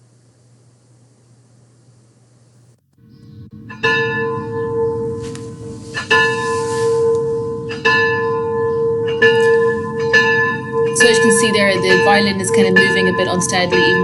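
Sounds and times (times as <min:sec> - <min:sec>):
bell tolling: 0:03.2 - 0:14.0.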